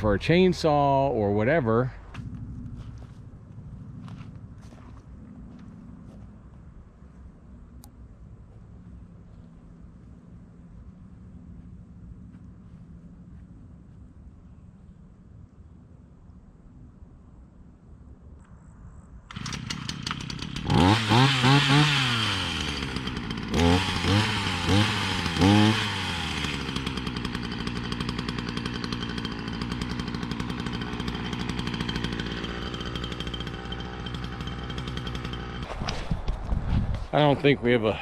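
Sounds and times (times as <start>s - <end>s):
chainsaw starting and revving: 19.3s - 36.4s.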